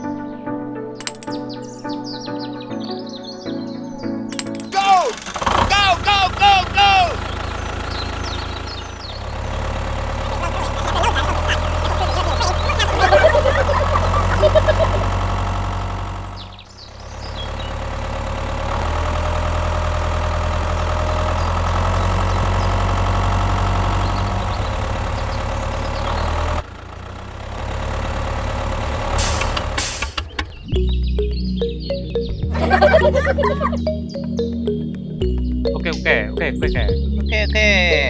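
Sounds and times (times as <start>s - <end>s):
motor humming: 4.7s - 26.6s.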